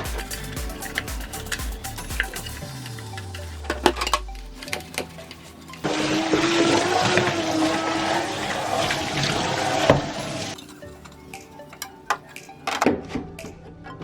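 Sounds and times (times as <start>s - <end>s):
tap water running into sink: 5.9s - 10.6s.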